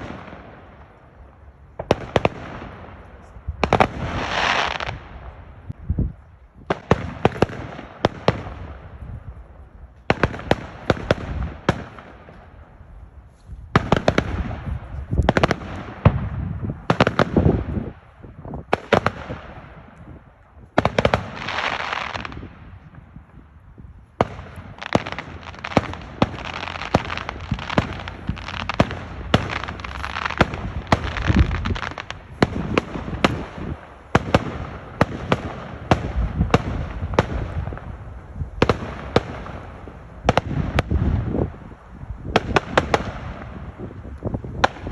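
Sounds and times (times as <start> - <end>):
firework bangs: 0.0 - 5.8, 6.6 - 12.7, 13.7 - 44.9
firework hissing and crackling: 1.8 - 5.4, 20.8 - 22.6, 24.0 - 44.9.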